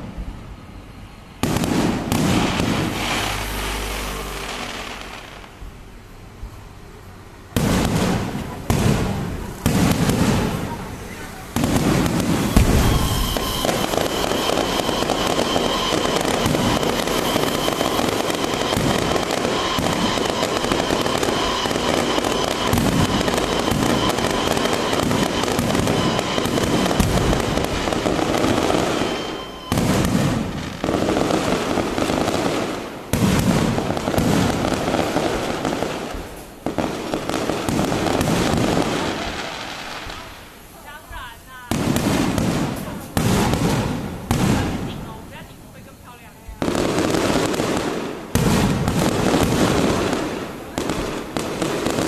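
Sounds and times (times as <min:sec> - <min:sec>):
fireworks crackling bangs: 0:00.0 - 0:52.0
steady high tone: 0:12.0 - 0:32.0.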